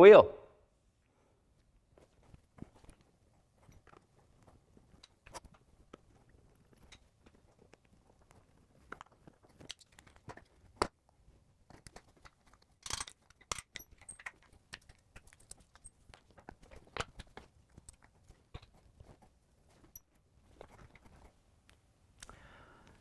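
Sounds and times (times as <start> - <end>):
hand tools clicking and knocking: 11.7 - 15.9.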